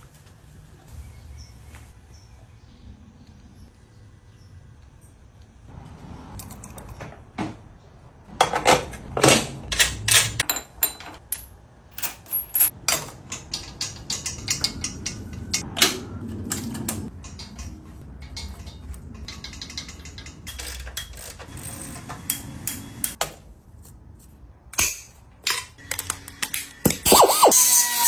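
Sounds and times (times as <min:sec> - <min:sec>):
metallic clicks and clanks of chain: 0:09.7 - 0:15.6.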